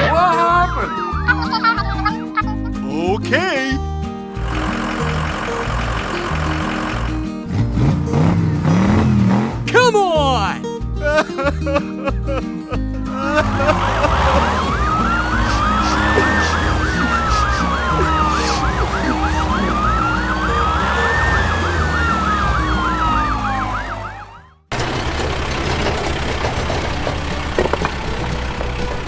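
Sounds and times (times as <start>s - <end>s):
siren wailing: 0.0s - 2.1s, 4.4s - 7.2s, 13.2s - 24.6s
yelping siren: 0.0s - 2.2s, 4.4s - 7.2s, 13.2s - 24.6s
background music: 0.0s - 24.4s.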